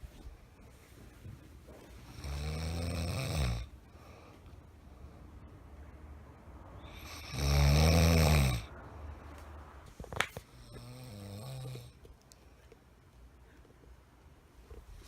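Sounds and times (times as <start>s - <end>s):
man snoring: 2.1s - 3.7s, 6.8s - 8.7s, 10.6s - 12.0s.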